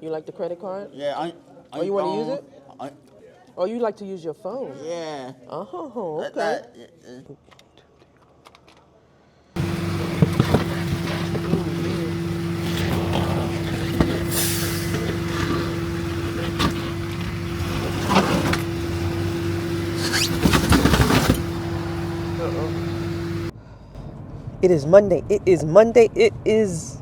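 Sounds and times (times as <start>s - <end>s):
rattling: 9.6s - 23.5s
vehicle engine hum: 9.6s - 23.5s.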